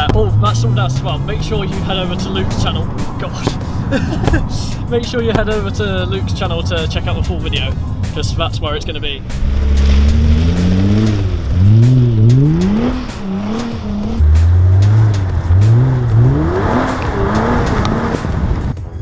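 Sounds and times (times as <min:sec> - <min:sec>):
car engine revving: 0:00.0 - 0:18.8
rushing noise: 0:07.6 - 0:18.8.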